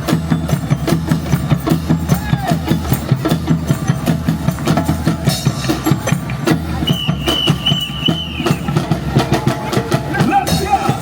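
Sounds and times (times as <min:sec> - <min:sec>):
fast drum beat: 0:00.0 - 0:11.0
music over loudspeakers: 0:05.3 - 0:11.0.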